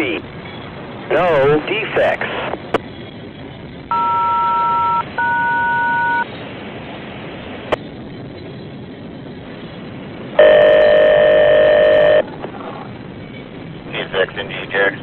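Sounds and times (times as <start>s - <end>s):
long multi-pitch tone: 3.9s - 6.2s, 10.4s - 12.2s
touch-tone beeps: 3.9s - 6.2s.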